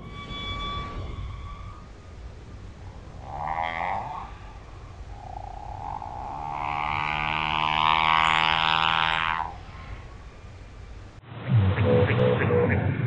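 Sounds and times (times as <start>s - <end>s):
whale call underwater: 0.0s - 10.0s
low background noise: 0.0s - 13.0s.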